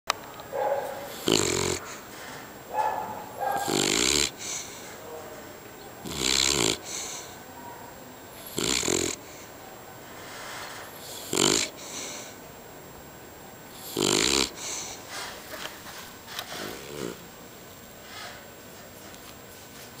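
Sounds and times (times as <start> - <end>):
dog snoring loudly: 1.0 - 1.9, 3.4 - 4.6, 6.0 - 7.1, 8.4 - 9.3, 10.8 - 12.4, 13.7 - 15.0, 16.5 - 17.3.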